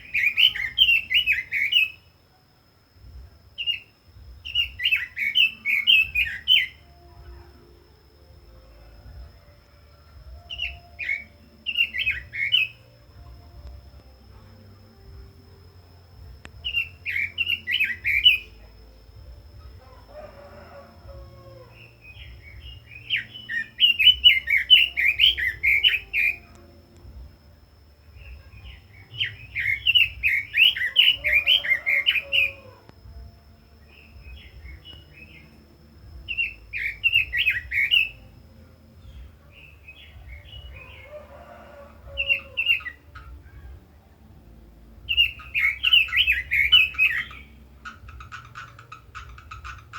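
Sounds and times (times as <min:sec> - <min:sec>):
fainter lower bird calls: 0:00.0 - 0:02.2, 0:16.5 - 0:26.8, 0:28.1 - 0:32.9, 0:33.5 - 0:44.2, 0:45.1 - 0:49.9.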